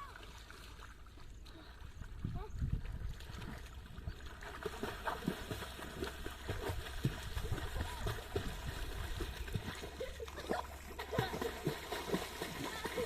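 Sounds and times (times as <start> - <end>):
water splashing: 0.0 - 13.0.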